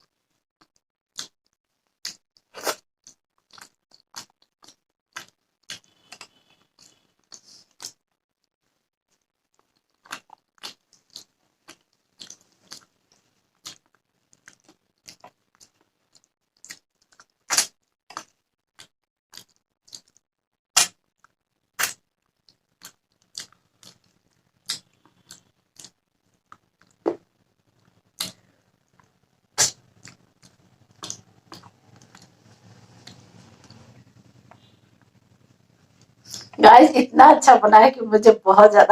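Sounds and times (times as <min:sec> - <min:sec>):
chewing with wet mouth clicks: 0:00.6 - 0:01.4, 0:02.0 - 0:08.0, 0:09.5 - 0:12.9, 0:13.5 - 0:20.2, 0:20.8 - 0:27.0, 0:27.8 - 0:35.4.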